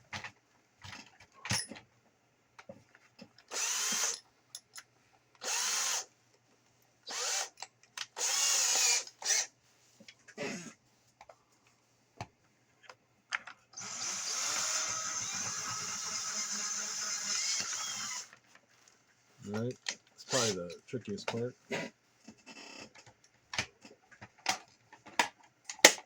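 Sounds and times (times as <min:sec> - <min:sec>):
power drill bursts: 0:03.5 - 0:04.2, 0:07.1 - 0:07.5, 0:08.2 - 0:09.5, 0:13.8 - 0:18.3, 0:20.3 - 0:20.6
light clicks and handling noises: 0:18.3 - 0:21.6.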